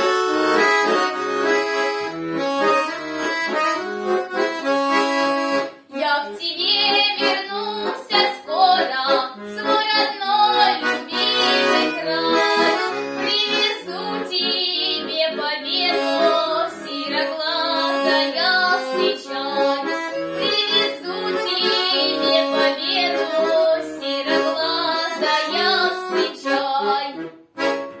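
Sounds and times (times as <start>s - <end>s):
accordion: 0.0s - 28.0s
woman singing folk song: 5.9s - 27.3s.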